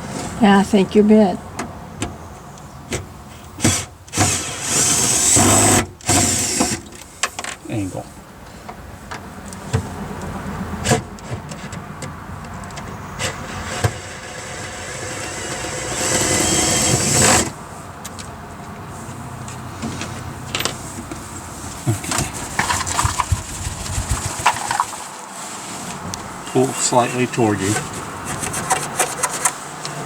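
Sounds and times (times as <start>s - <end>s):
power drill driving a screw: 3.6s - 6.8s, 13.6s - 17.5s.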